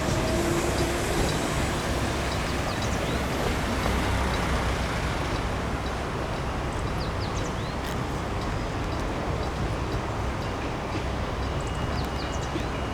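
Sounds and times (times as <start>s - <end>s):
vehicle rumbling past: 0.0s - 6.5s.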